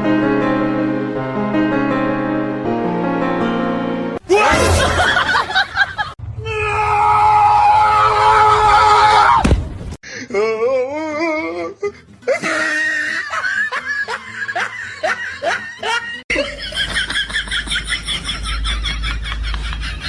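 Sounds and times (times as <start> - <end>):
person laughing: 11.9 - 20.0.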